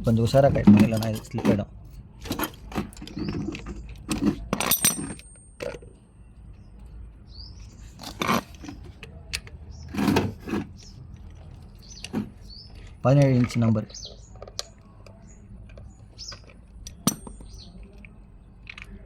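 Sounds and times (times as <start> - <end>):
metal spanner clinking: 0.6 - 1.6, 2.2 - 5.8, 16.8 - 18.0.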